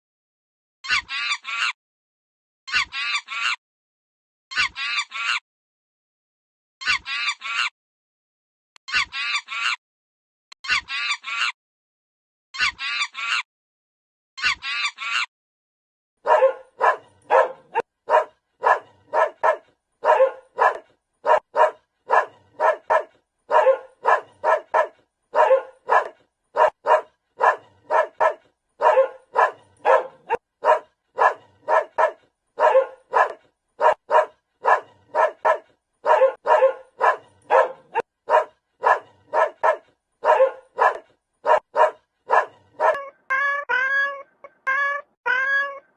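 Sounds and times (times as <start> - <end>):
dog barking: 16.2 - 43.1.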